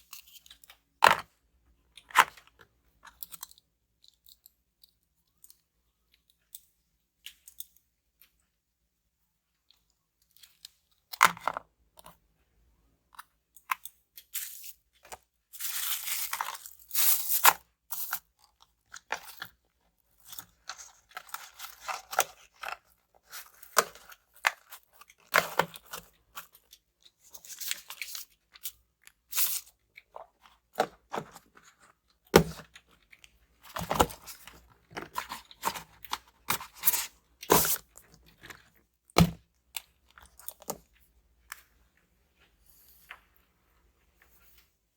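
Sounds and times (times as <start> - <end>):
packaging rustling and scraping: 14.4 - 18.2, 20.2 - 26.6, 33.6 - 38.8.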